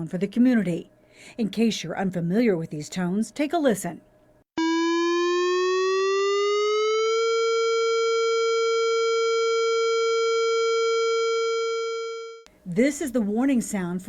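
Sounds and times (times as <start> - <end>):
warning siren steady tone: 4.6 - 12.5.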